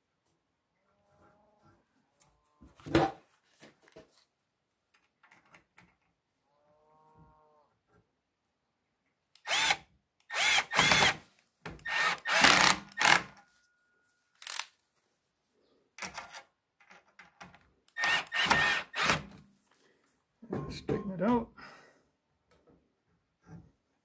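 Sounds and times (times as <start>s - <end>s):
power drill driving screws into wood: 9.4s - 13.4s, 14.4s - 14.7s, 17.9s - 19.4s.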